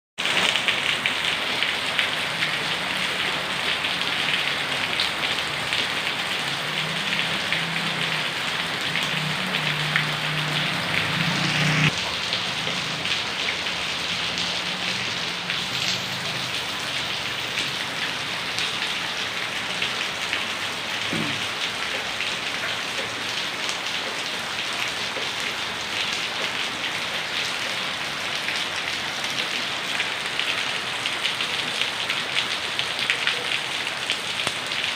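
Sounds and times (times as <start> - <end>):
heavy rain pouring: 0.2 - 34.9.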